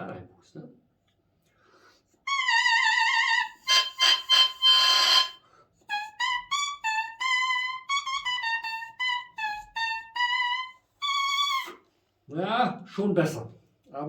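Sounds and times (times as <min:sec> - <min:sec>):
oboe reed buzzing: 0:02.3 - 0:11.6.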